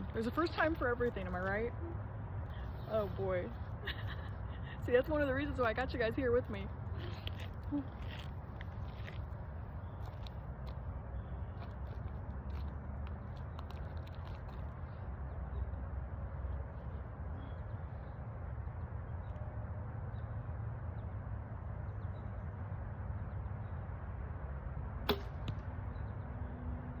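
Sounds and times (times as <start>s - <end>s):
low background rumble: 0.0s - 27.0s
bow string snap: 25.1s - 25.6s.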